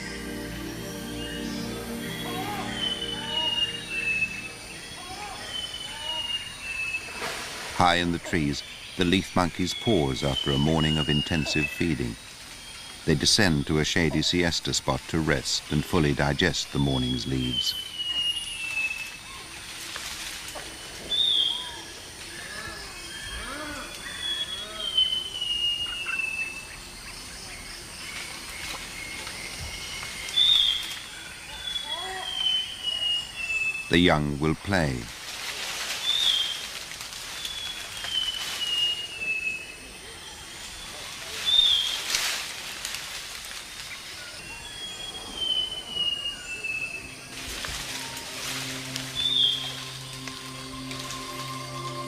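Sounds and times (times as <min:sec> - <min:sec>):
long downward gliding whistle: 0:00.0 - 0:07.0, 0:44.4 - 0:52.0
chirping bird calls: 0:00.0 - 0:19.8, 0:43.8 - 0:52.0
high insect drone: 0:00.0 - 0:52.0
steady background hiss: 0:00.0 - 0:52.0.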